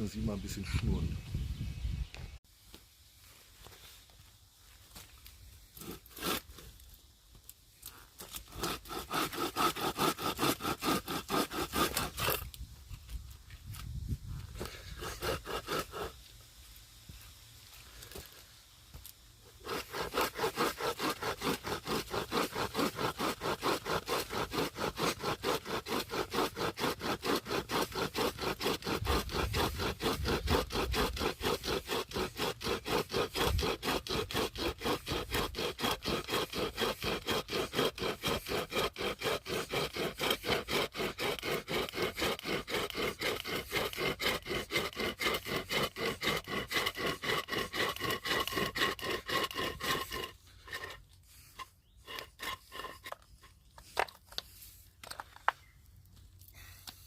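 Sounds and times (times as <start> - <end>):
hand chainsaw rasping through wood: 5.7 - 6.8, 7.8 - 12.5, 14.4 - 16.2, 19.4 - 55.3.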